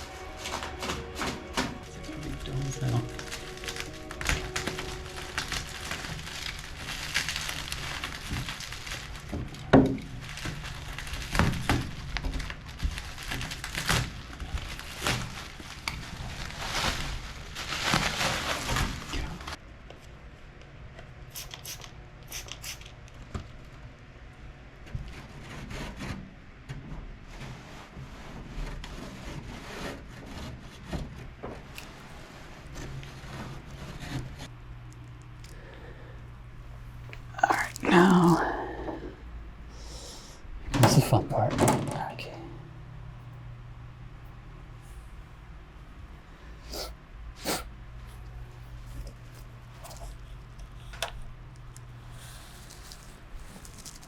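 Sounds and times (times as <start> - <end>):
crinkling and rustling: 0.0 - 20.2, 24.8 - 46.5, 47.9 - 54.0.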